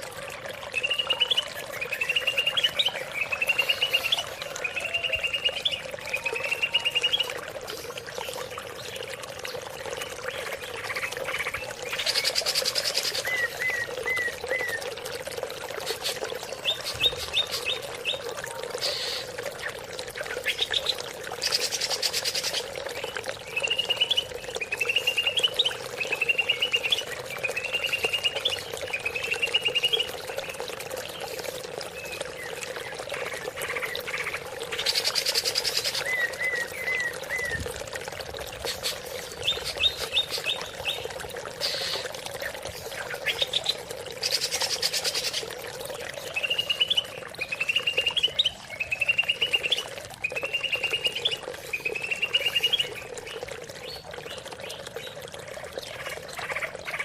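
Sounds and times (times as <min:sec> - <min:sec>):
water trickling: 0:00.0 - 0:57.0
bird singing trilled phrases: 0:00.7 - 0:07.4, 0:08.1 - 0:14.9, 0:15.9 - 0:37.6, 0:38.6 - 0:57.0.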